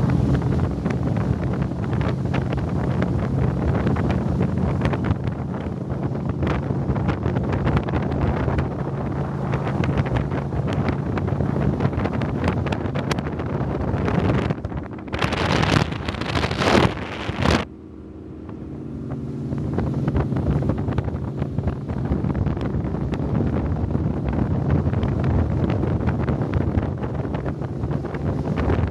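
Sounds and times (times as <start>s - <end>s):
powerboat engines droning: 0.0s - 28.9s
wind rush on microphone: 0.0s - 28.9s.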